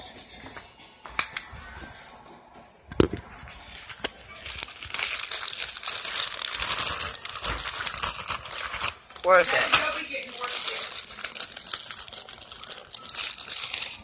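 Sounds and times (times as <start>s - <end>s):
plastic packaging rustling: 3.0s - 14.0s.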